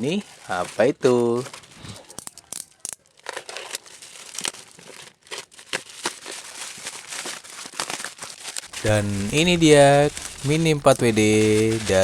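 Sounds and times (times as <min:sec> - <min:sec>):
plastic packaging crinkling and tearing: 0:00.0 - 0:12.0.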